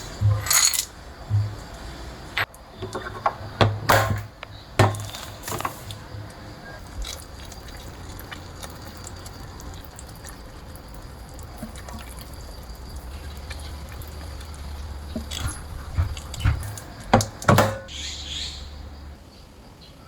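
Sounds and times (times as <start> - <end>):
kitchenware clinking: 0.0 - 1.8, 2.8 - 8.1, 13.3 - 17.9
low hum: 0.0 - 2.4.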